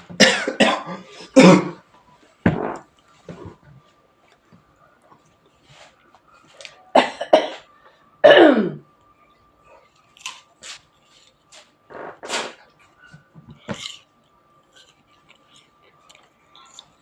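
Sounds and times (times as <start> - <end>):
person clearing throat: 0.2 - 1.8, 7.0 - 8.8
person coughing: 0.2 - 1.8, 7.0 - 8.8.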